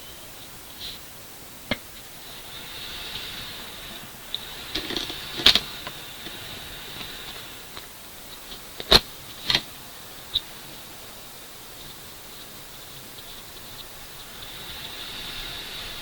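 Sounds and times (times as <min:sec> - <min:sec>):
steady hiss: 0:00.0 - 0:16.0
objects clicking and knocking: 0:04.7 - 0:06.4.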